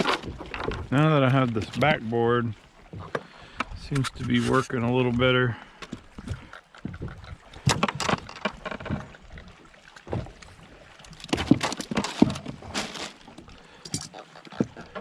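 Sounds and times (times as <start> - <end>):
fishing gear knocks and rattles: 0.0 - 2.0, 5.8 - 9.2, 10.1 - 15.0.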